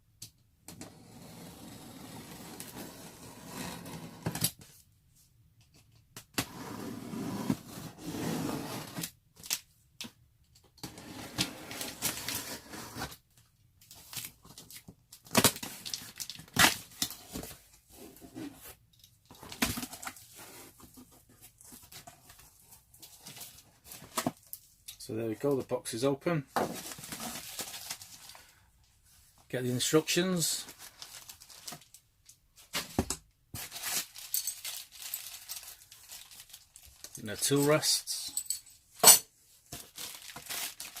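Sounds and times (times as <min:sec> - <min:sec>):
cardboard tearing and scraping: 0:01.2 - 0:04.4, 0:06.4 - 0:09.1, 0:11.0 - 0:13.2.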